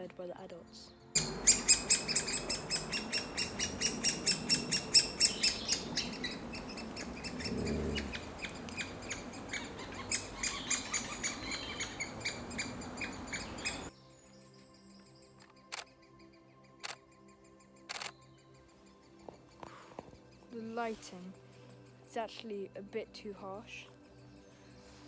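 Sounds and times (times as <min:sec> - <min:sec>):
woodpecker chicks chirping: 0:01.2 - 0:13.9.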